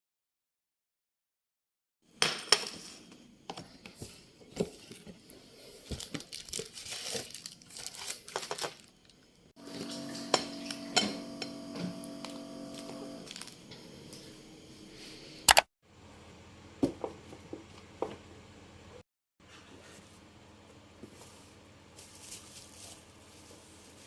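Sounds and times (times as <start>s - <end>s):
small objects clicking and rustling: 5.8s - 9.2s, 13.2s - 13.6s
steady hum: 9.6s - 15.5s.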